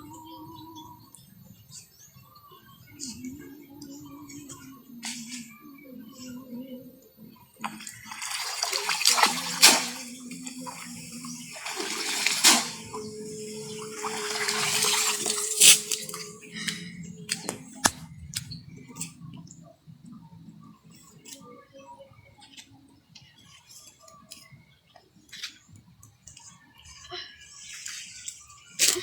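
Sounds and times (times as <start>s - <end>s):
small drips and knocks: 7.6s - 13.0s
river water splashing: 7.6s - 18.5s.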